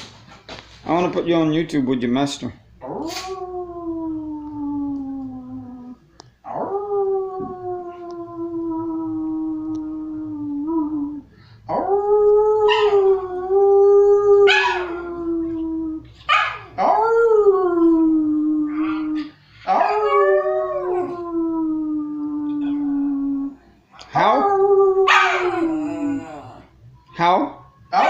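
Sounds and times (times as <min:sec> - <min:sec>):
dog howling: 0:02.8 - 0:23.6, 0:24.2 - 0:26.7.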